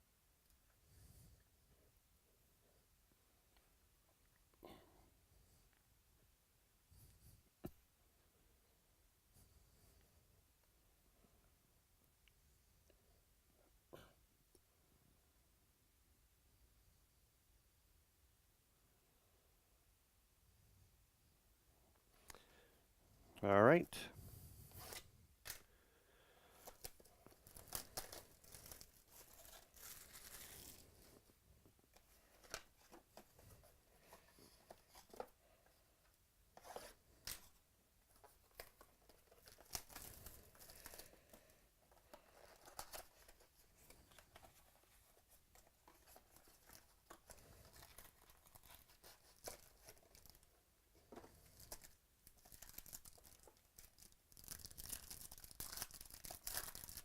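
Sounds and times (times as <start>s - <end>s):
foil wrappers tearing and crinkling: 26.6s - 30.8s, 39.3s - 41.1s, 51.6s - 57.0s.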